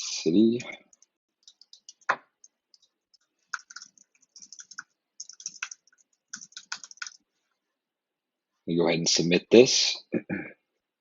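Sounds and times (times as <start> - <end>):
typing on keyboard: 0.9 - 7.2.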